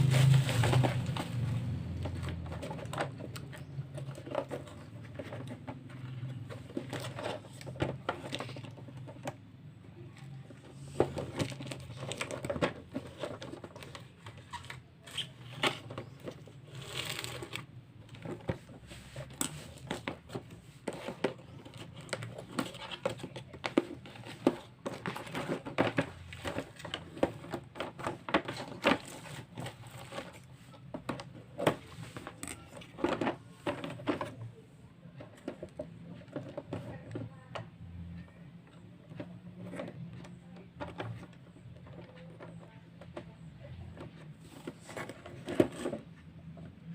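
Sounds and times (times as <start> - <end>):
packaging crinkling and tearing: 0.0 - 4.8, 16.7 - 17.7.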